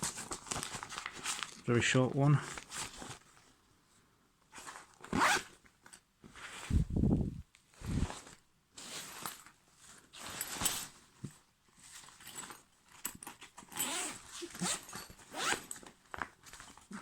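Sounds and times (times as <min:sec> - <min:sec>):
bag fabric rustling: 0:04.6 - 0:05.6, 0:07.8 - 0:11.2, 0:11.8 - 0:17.0
backpack zipper pulled: 0:05.1 - 0:05.5, 0:13.8 - 0:15.8.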